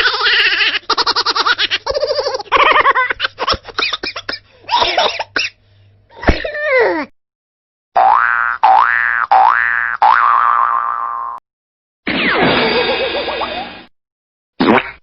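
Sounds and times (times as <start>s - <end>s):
person laughing in bursts: 0.0s - 4.2s, 12.6s - 13.8s.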